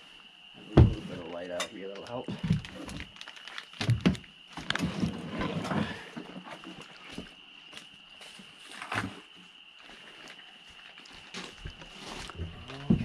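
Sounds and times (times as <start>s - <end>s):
frogs chorus: 0.0s - 8.2s
handling knocks and rustling: 0.6s - 7.4s.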